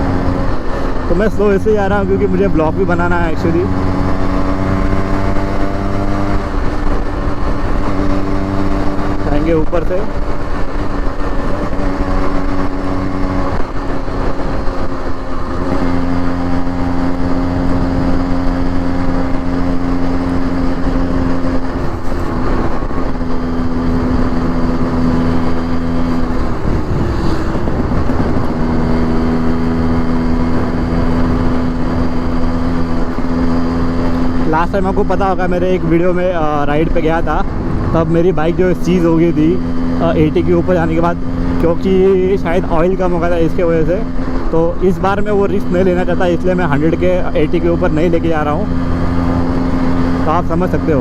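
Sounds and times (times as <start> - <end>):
motorcycle engine cruising: 0.0 - 51.0
wind noise: 10.0 - 34.5, 36.3 - 38.7.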